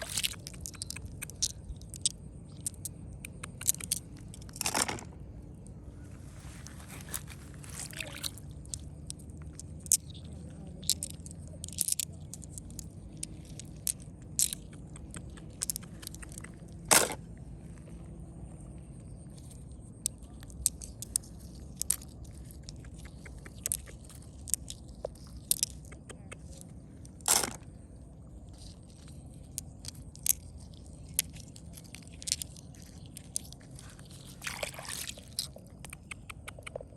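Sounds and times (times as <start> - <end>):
crunching scrapes: 0.0 - 2.0, 6.0 - 18.0, 20.2 - 36.0
sharp clicks: 0.0 - 4.6
steady low rumble: 0.0 - 36.9
scraping crunch: 6.0 - 8.8, 28.4 - 35.8.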